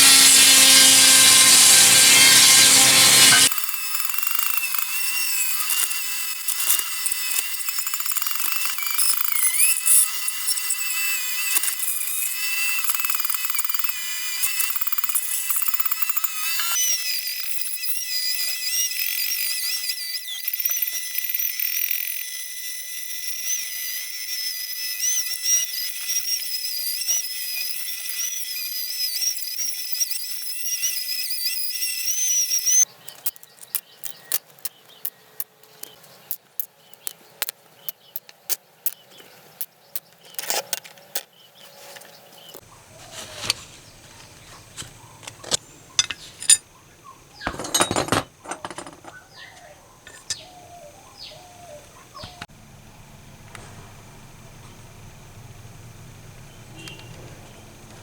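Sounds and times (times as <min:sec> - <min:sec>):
high-speed power tool whining: 0:00.0 - 0:32.9.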